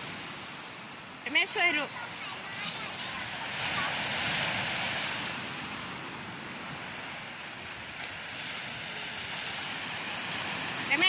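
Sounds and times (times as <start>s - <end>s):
sea waves washing onto shore: 0.0s - 11.0s.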